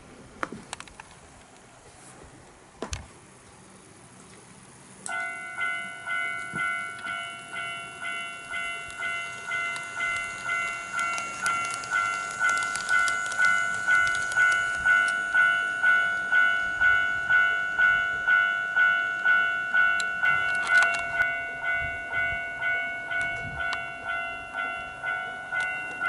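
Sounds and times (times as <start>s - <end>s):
electronic crossing bell ringing: 5.1s - 26.0s
sharp clicks: 8.9s - 15.2s.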